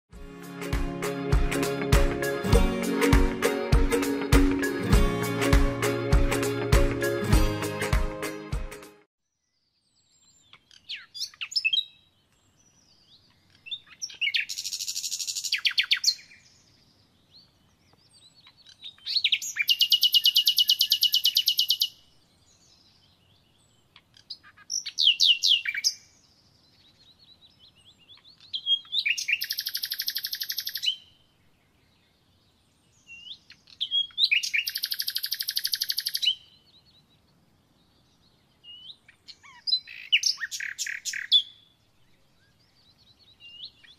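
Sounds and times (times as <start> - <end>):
songbird singing trills: 9.3 - 43.9.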